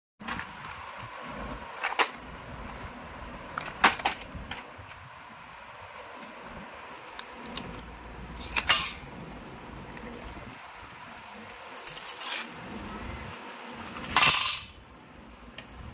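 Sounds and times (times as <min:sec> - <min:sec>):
pencils clicking and clattering: 0:06.0 - 0:09.4.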